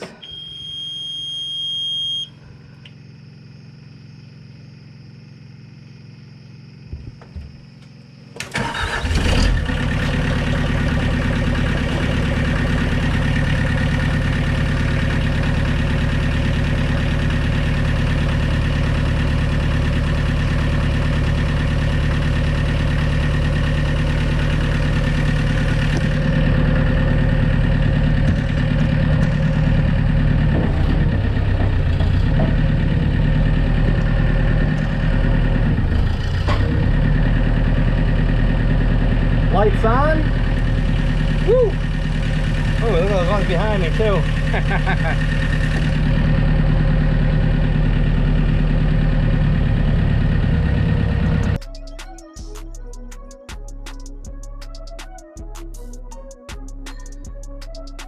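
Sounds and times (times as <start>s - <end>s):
excavator engine cranking and running: 0.0s - 0.4s, 8.3s - 51.6s
electronic beep: 0.2s - 2.3s.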